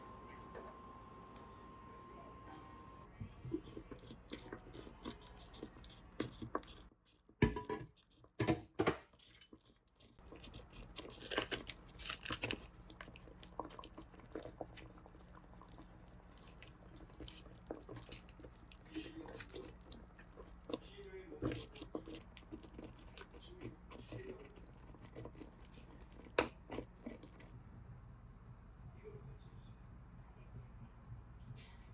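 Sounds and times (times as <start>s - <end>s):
person chewing and crunching: 3.5s - 8.6s, 9.3s - 27.6s.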